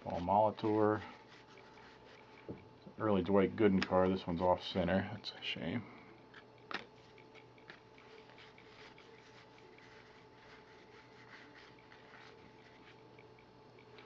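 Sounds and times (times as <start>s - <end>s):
low steady hum: 0.0s - 14.0s
cardboard cards being handled: 6.3s - 13.1s.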